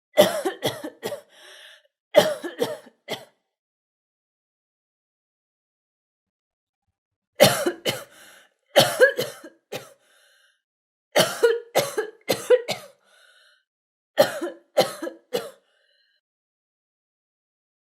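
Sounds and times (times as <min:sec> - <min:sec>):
girl coughing: 0:00.2 - 0:01.3, 0:02.2 - 0:03.3, 0:07.4 - 0:08.1, 0:08.8 - 0:10.0, 0:11.2 - 0:13.0, 0:14.2 - 0:15.6.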